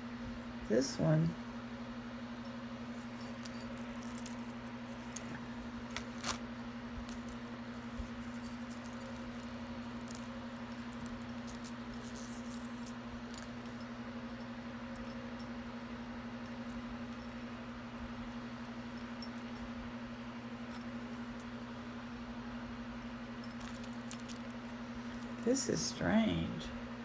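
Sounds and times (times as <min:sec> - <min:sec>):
steady low hum: 0:00.0 - 0:27.0
metal jewelry clinking: 0:02.8 - 0:15.6, 0:16.3 - 0:21.8, 0:23.4 - 0:25.9.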